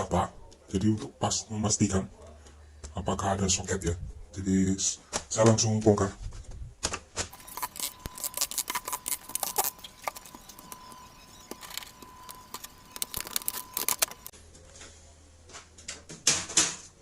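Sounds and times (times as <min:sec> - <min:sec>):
faint steady tone: 0:07.3 - 0:14.4.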